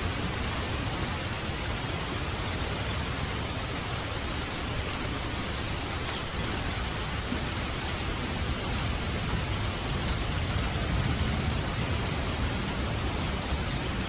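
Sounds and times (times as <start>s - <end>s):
light rain hissing: 0.0s - 14.0s
raindrop ticks: 5.3s - 13.9s.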